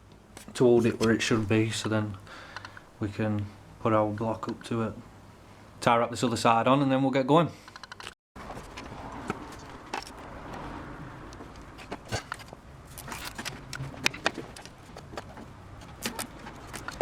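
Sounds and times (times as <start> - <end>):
steady background hiss: 0.0 - 7.8
parts clicking and knocking: 7.7 - 10.6, 11.2 - 17.0.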